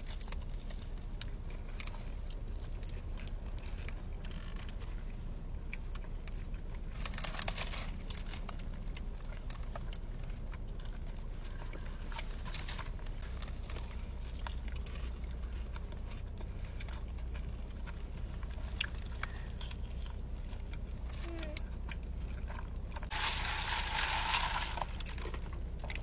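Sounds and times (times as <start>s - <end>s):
chewing mouth sounds: 0.0s - 23.2s.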